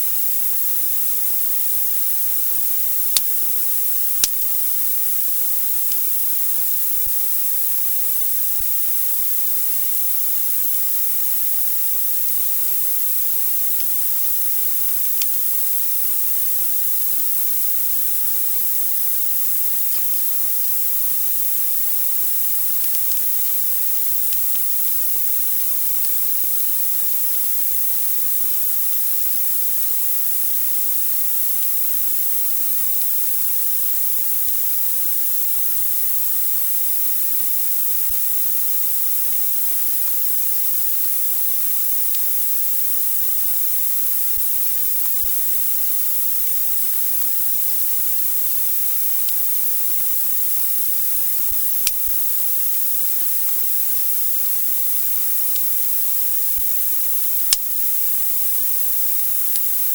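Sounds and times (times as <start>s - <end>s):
sharp click: 3.2s - 3.4s, 4.2s - 4.5s, 22.9s - 23.3s, 51.8s - 52.3s, 56.7s - 57.9s, 59.5s - 59.8s.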